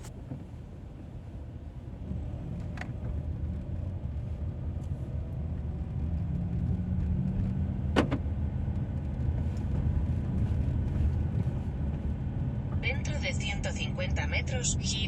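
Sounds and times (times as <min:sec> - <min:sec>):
car driving on road: 0:00.0 - 0:15.0.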